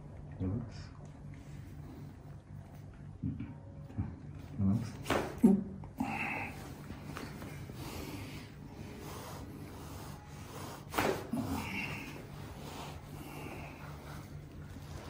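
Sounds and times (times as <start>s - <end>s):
low steady hum: 0.0s - 15.0s
quiet breathing: 5.9s - 15.0s
person grunting: 11.3s - 12.2s.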